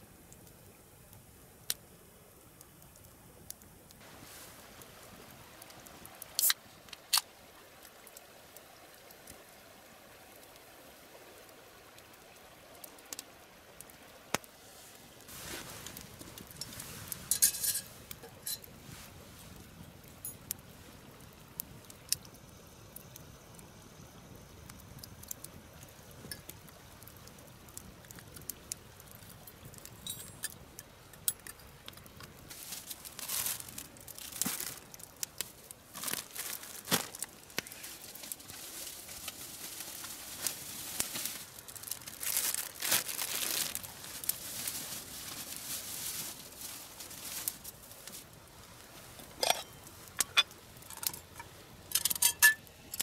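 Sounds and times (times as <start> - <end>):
rustling and crinkling: 14.6 - 19.6, 31.4 - 53.0.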